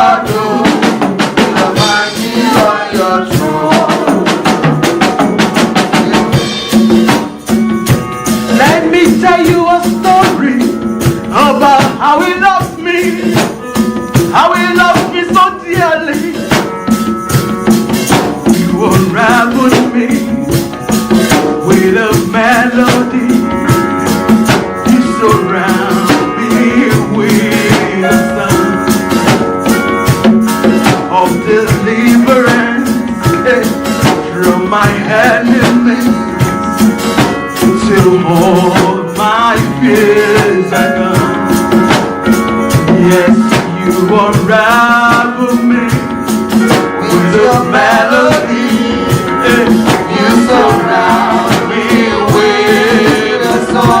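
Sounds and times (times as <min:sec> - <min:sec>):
voices singing slow melody: 0:00.0 - 0:04.7, 0:18.1 - 0:29.8, 0:30.6 - 0:54.0
drums and percussion: 0:00.0 - 0:54.0
sustained keyboard chords: 0:00.0 - 0:54.0.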